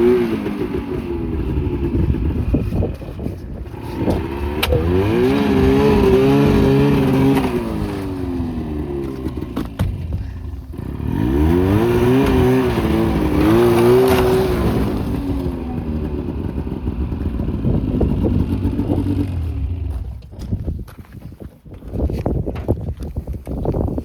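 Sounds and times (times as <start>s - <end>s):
engine revving: 0.0s - 2.9s, 3.6s - 9.8s, 10.6s - 20.0s.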